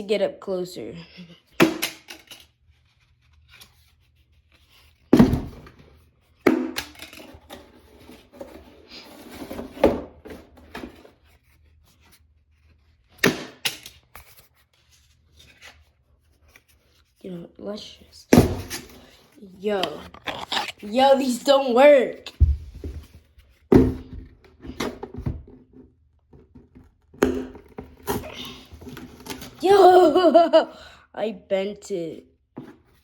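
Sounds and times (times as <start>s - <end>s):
rustling and scraping: 7.0s - 13.1s, 18.6s - 27.1s.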